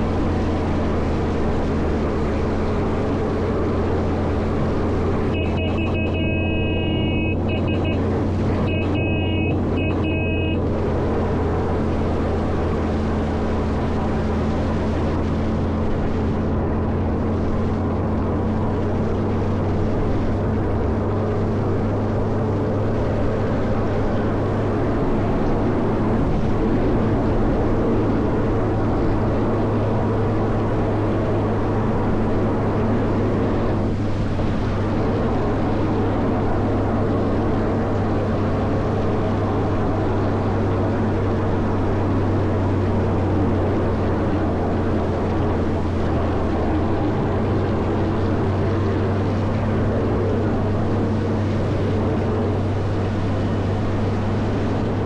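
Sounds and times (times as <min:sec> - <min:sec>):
diesel engine humming: 0:00.0 - 0:55.0
pitched broken-up tone: 0:05.2 - 0:10.6.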